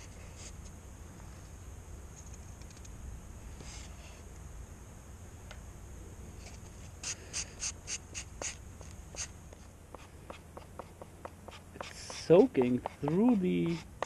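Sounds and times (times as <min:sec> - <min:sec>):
quick scratchy strokes: 0:10.0 - 0:14.0.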